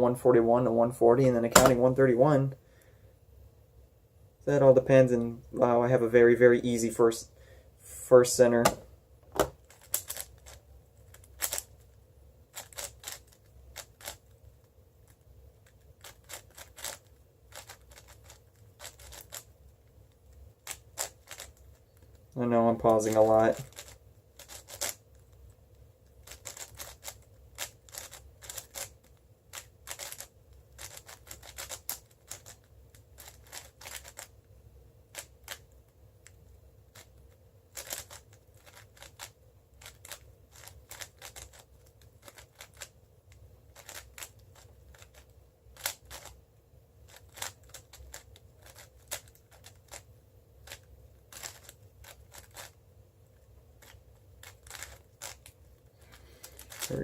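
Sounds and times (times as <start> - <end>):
puzzle cube plastic clicks: 9.4 - 14.4, 15.1 - 19.5, 20.3 - 22.2, 22.8 - 25.3, 26.2 - 34.3, 35.1 - 46.4, 47.1 - 52.8, 53.8 - 57.0.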